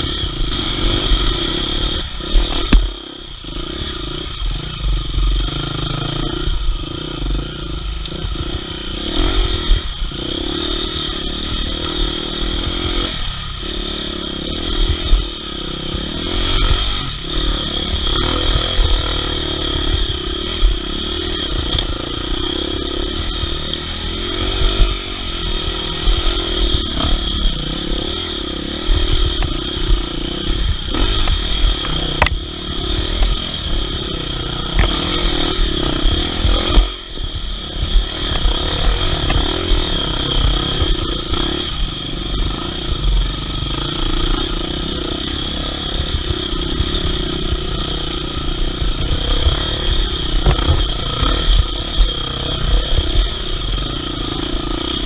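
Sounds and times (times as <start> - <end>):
dirt bike engine revving: 0.0 - 55.0.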